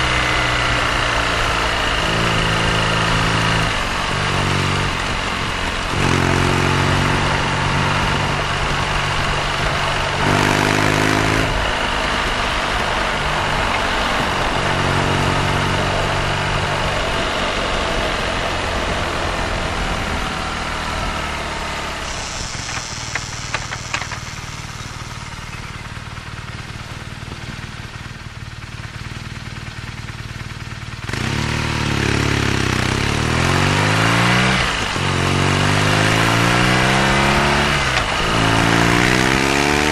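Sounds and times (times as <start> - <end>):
motorcycle engine running: 0.0 - 39.9
wind hiss: 21.9 - 25.5.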